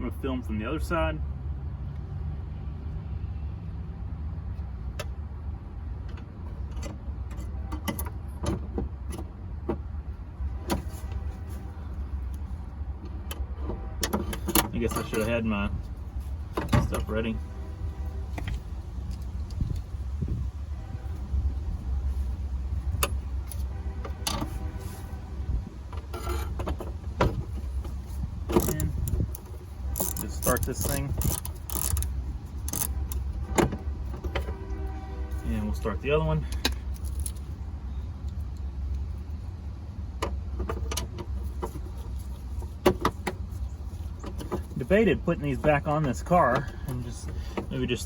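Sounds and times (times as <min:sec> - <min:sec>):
steady low rumble: 0:14.7 - 0:40.6
small metal clicks and knocks: 0:27.5 - 0:34.6, 0:36.5 - 0:37.5
small metal parts rattling: 0:28.5 - 0:33.3, 0:36.5 - 0:37.5.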